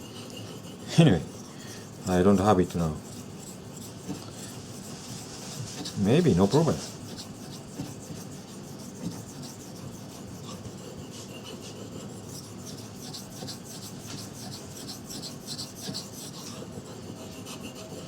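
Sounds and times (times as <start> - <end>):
knife scraping on wet stone: 0.0 - 18.0.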